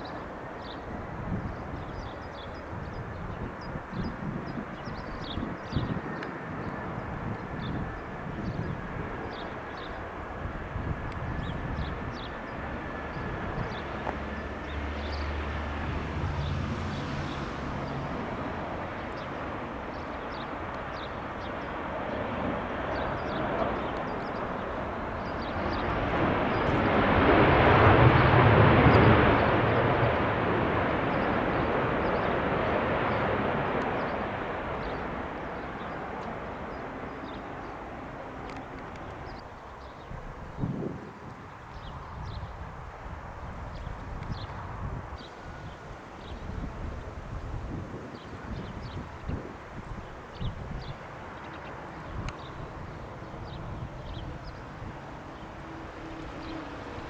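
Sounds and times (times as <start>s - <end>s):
jet engine roar passing: 0.0s - 39.5s, 40.3s - 57.0s.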